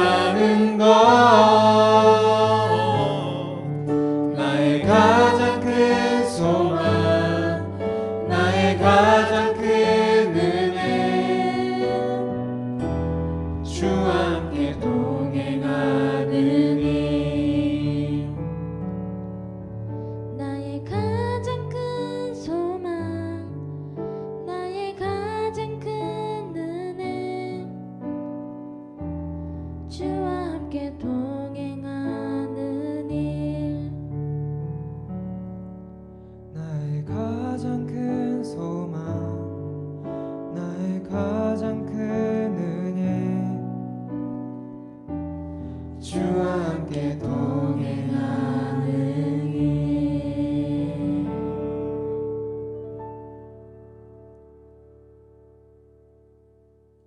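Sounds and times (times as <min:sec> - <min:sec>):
person singing: 0:00.0 - 0:12.3
worship song with voices singing: 0:00.0 - 0:18.9, 0:36.6 - 0:44.2, 0:45.5 - 0:52.4
piano chords: 0:00.0 - 0:57.0.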